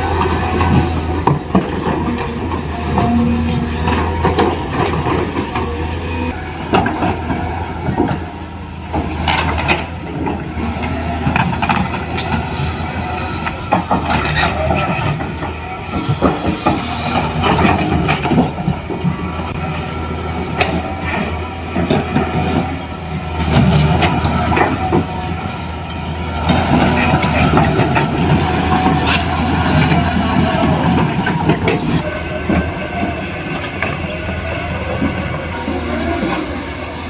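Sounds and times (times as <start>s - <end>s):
toy electric motors humming: 0.1s - 7.2s, 8.7s - 37.0s
clicking and scraping: 0.2s - 8.2s, 8.8s - 37.0s.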